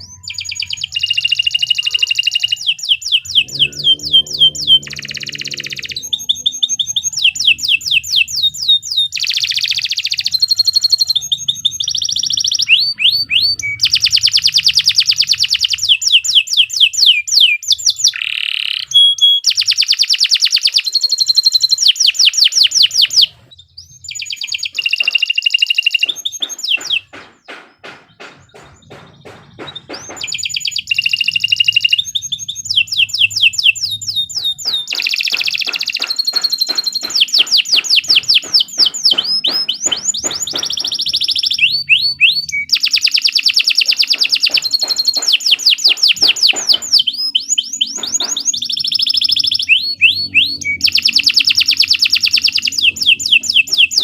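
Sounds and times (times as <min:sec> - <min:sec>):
dry clicking bird notes: 0:00.0 - 0:23.4, 0:24.1 - 0:54.0
canary singing trills: 0:00.0 - 0:54.0.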